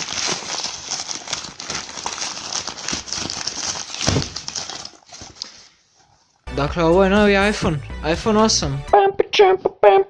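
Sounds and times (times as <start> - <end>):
packaging crinkling and rustling: 0.0 - 6.4.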